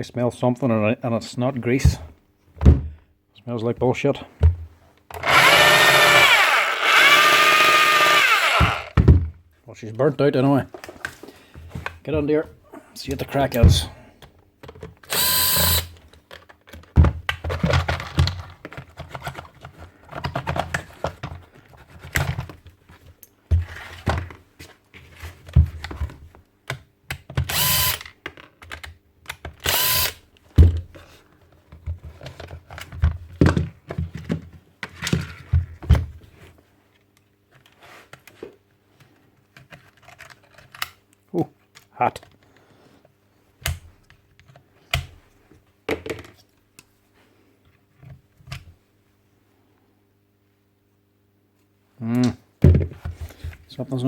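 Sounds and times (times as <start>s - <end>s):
power tool motor bursts: 5.2s - 9.0s, 15.1s - 15.9s, 27.5s - 28.1s, 29.6s - 30.2s
tool parts knocking and clattering: 14.6s - 22.6s.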